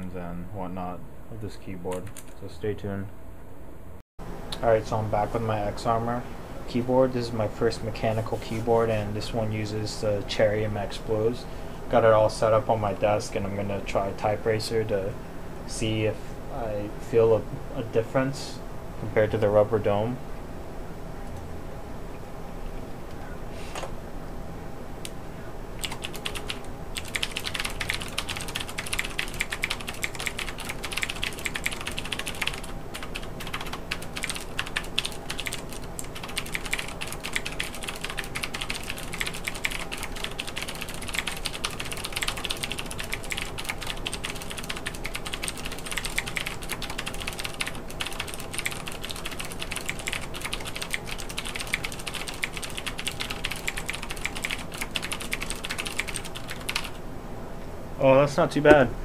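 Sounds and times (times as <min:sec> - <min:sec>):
clicky keyboard typing: 0:25.8 - 0:57.0.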